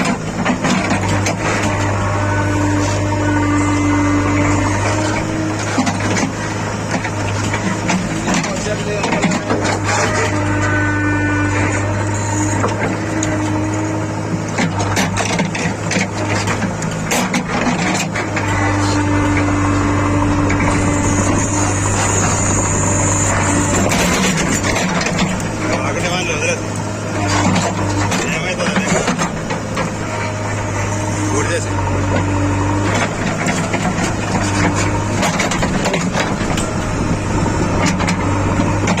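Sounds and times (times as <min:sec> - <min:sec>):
knocks and clatter: 0:00.0 - 0:01.9, 0:04.7 - 0:10.7, 0:14.3 - 0:19.5, 0:20.3 - 0:25.9, 0:27.2 - 0:30.6, 0:32.1 - 0:36.9, 0:37.6 - 0:39.0
diesel engine running: 0:00.0 - 0:39.0.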